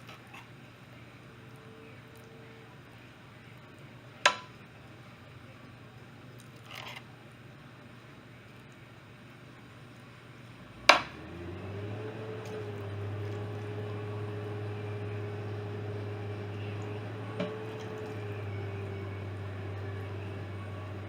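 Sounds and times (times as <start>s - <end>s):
appliance humming: 10.1s - 21.0s.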